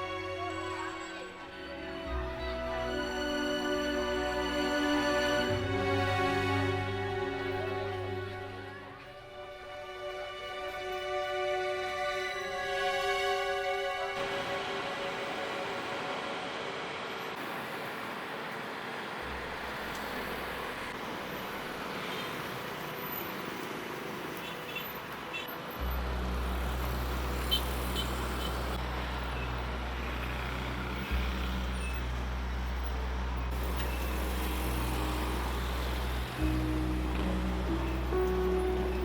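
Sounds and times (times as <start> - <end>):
hiss of passing vehicles: 13.6 - 39.0.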